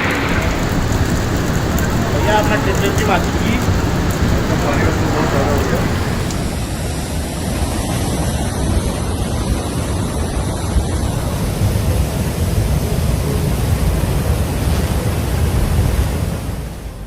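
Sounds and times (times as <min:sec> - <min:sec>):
deep buffeting rumble: 0:00.0 - 0:06.8
storm noise rushing: 0:00.0 - 0:07.1.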